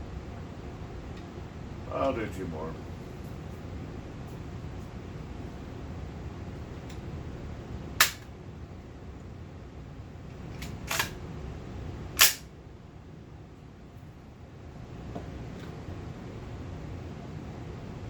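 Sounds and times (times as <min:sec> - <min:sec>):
carbine gunshots: 0:12.2 - 0:12.4.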